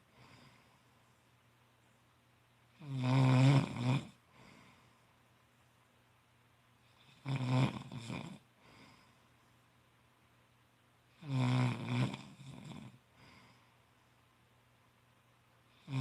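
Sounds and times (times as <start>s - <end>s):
faint breath: 0.0s - 1.4s, 4.2s - 5.3s, 8.6s - 9.6s, 13.1s - 14.2s
person snoring: 2.8s - 4.6s, 7.0s - 9.2s, 11.2s - 13.6s, 15.8s - 16.0s.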